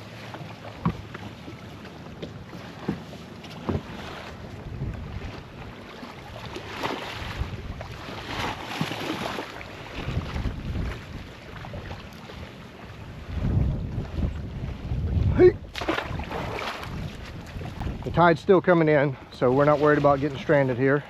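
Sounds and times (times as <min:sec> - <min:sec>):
water around a boat: 0:00.0 - 0:21.0
wind buffeting microphone: 0:03.6 - 0:09.2, 0:09.8 - 0:20.7.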